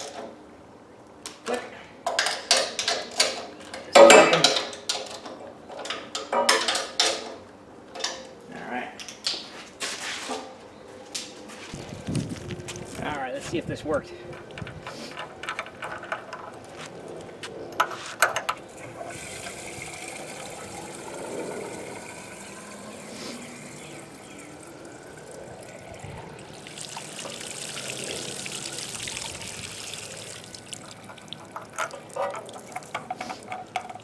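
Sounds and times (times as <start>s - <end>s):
water pouring and trickling: 18.7s - 34.0s.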